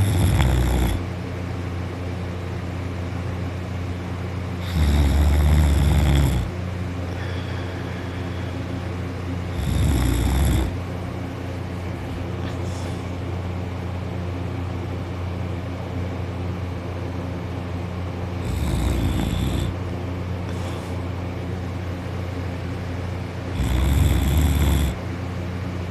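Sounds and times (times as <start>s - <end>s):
person snoring loudly: 0.0s - 1.1s, 4.6s - 6.5s, 9.5s - 10.8s, 18.4s - 19.8s, 23.5s - 25.0s
steady low hum: 0.0s - 25.9s.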